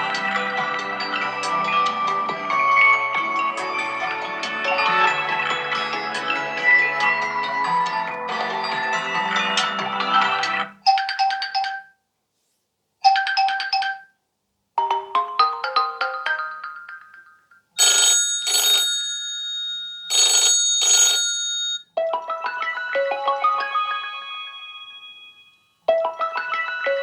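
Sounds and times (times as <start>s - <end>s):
ringtone melody: 0.0s - 11.9s, 13.0s - 14.1s, 14.8s - 18.3s, 20.2s - 27.0s
telephone bell ring: 14.9s - 27.0s.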